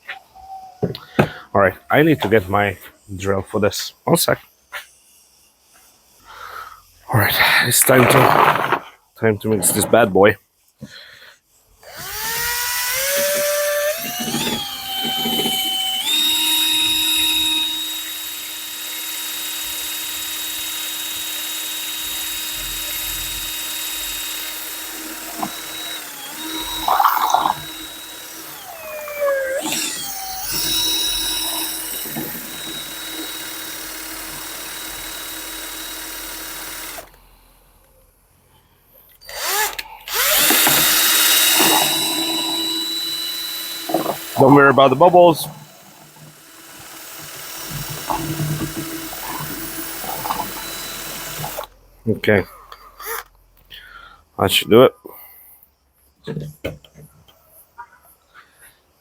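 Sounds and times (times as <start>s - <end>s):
electric drill motor whine: 11.8s - 37.6s, 39.2s - 51.8s.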